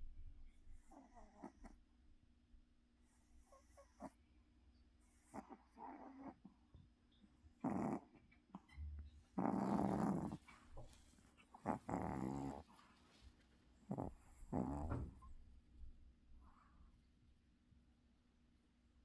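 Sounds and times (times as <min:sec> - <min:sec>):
dog making throaty sounds: 0:09.4 - 0:11.0, 0:11.6 - 0:12.8.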